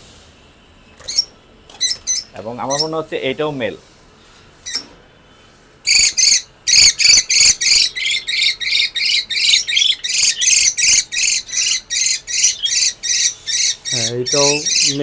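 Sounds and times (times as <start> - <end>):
lovebird shrill calls: 1.0 - 3.0, 4.6 - 4.8, 5.9 - 15.0.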